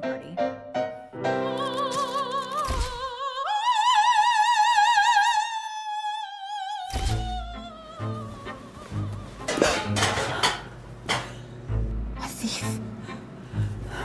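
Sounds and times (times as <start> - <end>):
operatic soprano singing: 1.3 - 10.7.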